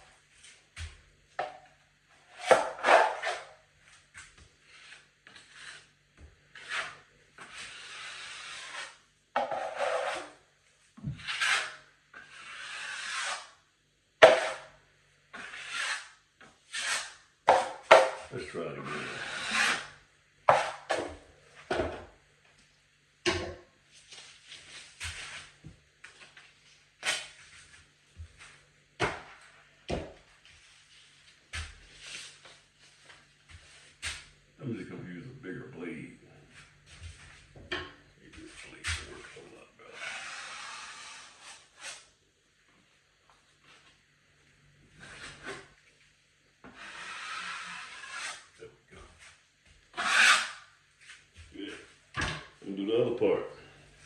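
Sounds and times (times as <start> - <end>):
taping knife scraping drywall: 4.6 - 5.9, 6.5 - 10.4, 11.2 - 13.6, 14.2 - 14.7, 15.3 - 18.2, 18.8 - 21.0, 39.9 - 42.1, 46.7 - 48.6, 49.9 - 50.8.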